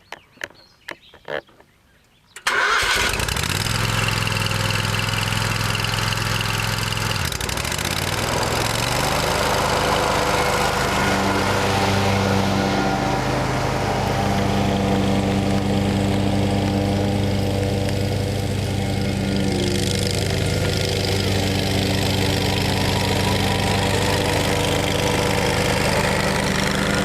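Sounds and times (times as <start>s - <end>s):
mower engine running: 2.5s - 27.0s.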